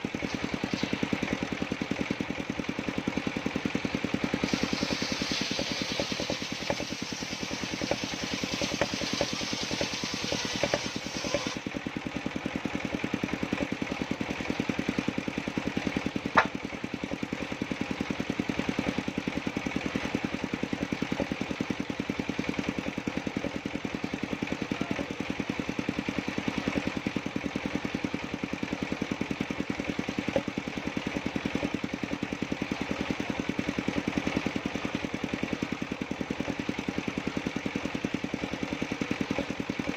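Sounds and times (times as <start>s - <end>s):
engine driving circular saw: 0.0s - 39.9s.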